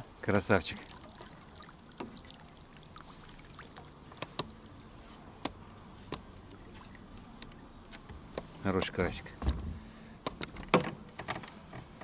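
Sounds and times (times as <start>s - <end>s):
splashing and trickling water: 0.0s - 8.1s.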